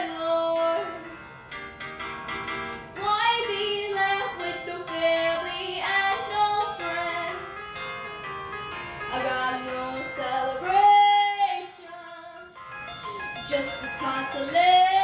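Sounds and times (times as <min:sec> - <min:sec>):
woman singing slow ballad: 0:00.0 - 0:01.2, 0:03.0 - 0:07.7, 0:09.1 - 0:12.6, 0:13.5 - 0:15.0
instrumental accompaniment: 0:00.0 - 0:11.0.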